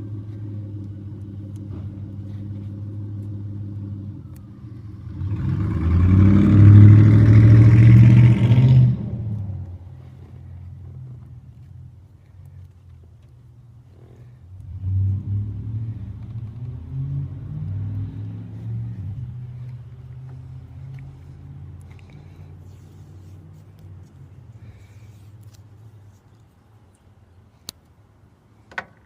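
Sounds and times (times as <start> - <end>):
truck engine running: 0.0 - 8.6.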